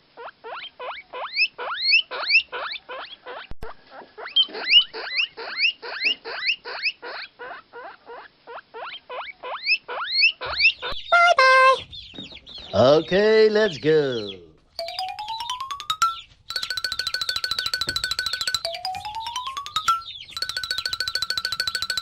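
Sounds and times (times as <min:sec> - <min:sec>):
chicks peeping: 0:09.8 - 0:22.0.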